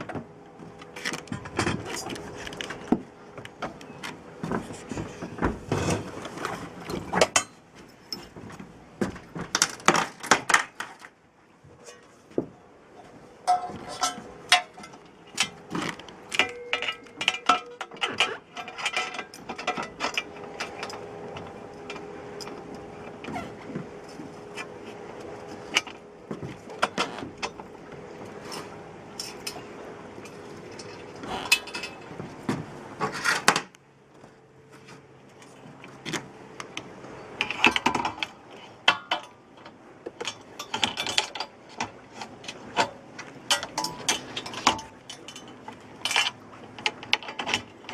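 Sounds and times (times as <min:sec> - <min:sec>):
steady hum: 0:11.2 - 0:47.9.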